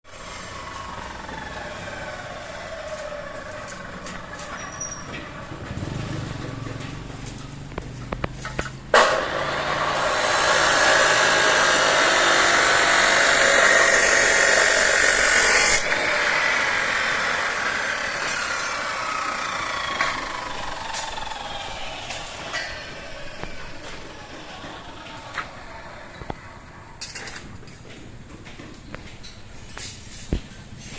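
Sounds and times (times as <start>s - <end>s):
loud steady hissing: 8.9s - 26.5s.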